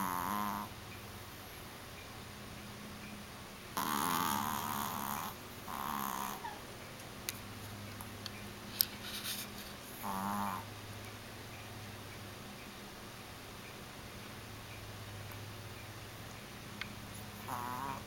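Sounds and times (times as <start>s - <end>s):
dog snoring: 0.0s - 0.7s, 3.8s - 6.6s, 9.9s - 10.7s, 17.4s - 18.0s.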